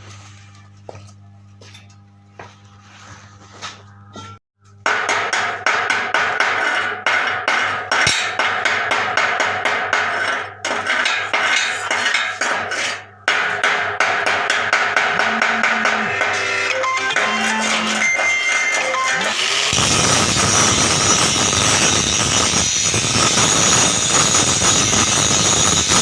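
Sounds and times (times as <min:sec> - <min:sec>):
welding arc crackling: 0:17.5 - 0:26.0.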